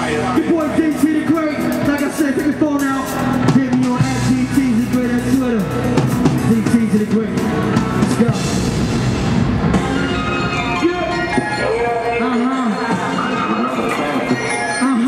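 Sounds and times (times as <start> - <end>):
rapping over a drum beat: 0.0 - 8.5.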